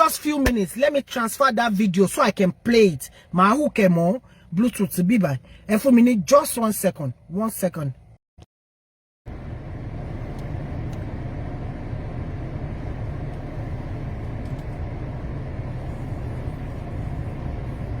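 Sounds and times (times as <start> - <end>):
low rumbling noise: 9.3 - 18.0.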